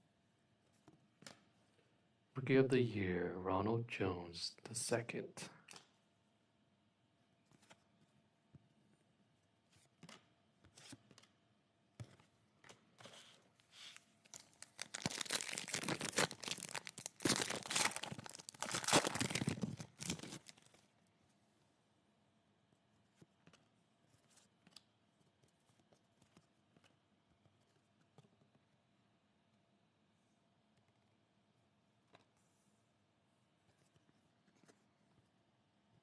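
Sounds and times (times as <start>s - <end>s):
wrapper tearing and crinkling: 14.3s - 20.7s.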